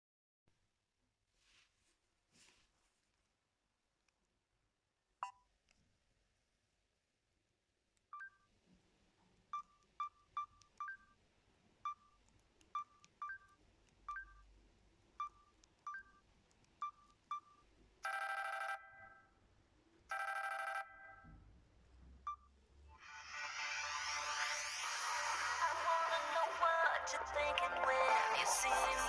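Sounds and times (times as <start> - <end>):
long electronic ring tones: 18.1 - 19.3, 20.1 - 21.2.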